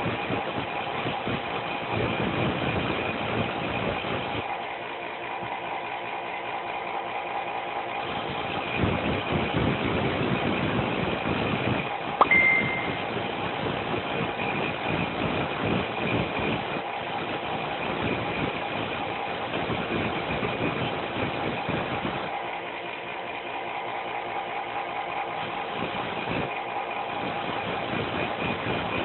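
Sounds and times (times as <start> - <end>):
brief higher tone: 12.2 - 13.1.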